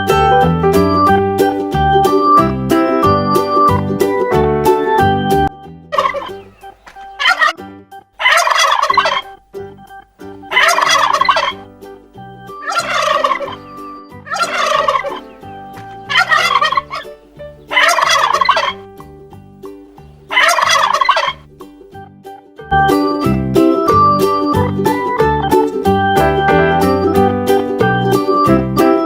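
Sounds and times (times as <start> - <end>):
soft keyboard tune: 0.0 - 8.2, 8.9 - 20.3, 22.0 - 29.0
turkey gobbling: 5.9 - 7.6, 8.2 - 9.5, 10.2 - 18.9, 20.1 - 21.5.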